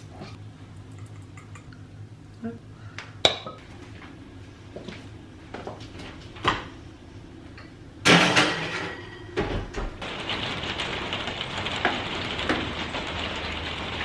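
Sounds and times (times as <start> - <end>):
dishes clattering: 8.1 - 9.7.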